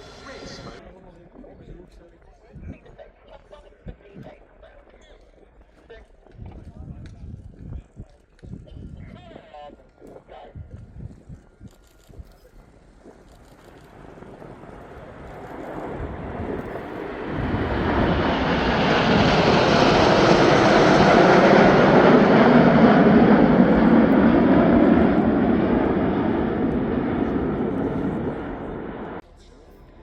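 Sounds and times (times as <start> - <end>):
aircraft flying past: 0.0 - 0.8, 13.2 - 29.2.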